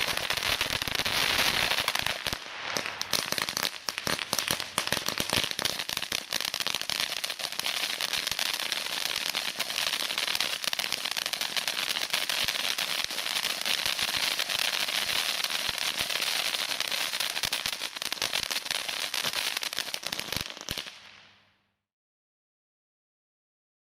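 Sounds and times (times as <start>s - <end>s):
firework reports: 0.0s - 6.0s
firework cake crackling: 0.0s - 21.5s.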